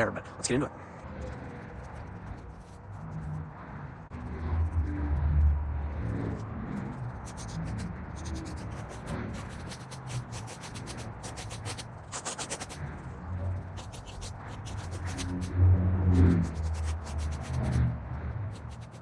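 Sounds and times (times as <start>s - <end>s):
low hum: 0.0s - 19.0s
sticks scraping across ground: 7.2s - 12.8s.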